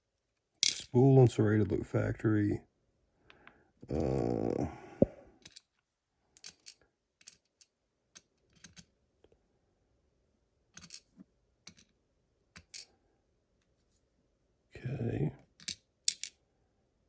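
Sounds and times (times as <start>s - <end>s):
tiny metal parts clicking: 15.6s - 16.3s.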